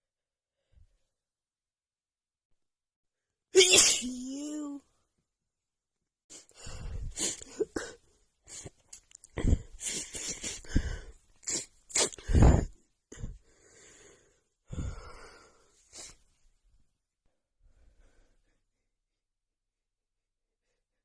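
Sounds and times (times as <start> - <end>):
woman sneezing: 3.6 - 4.6
sharp breaths: 6.4 - 7.5.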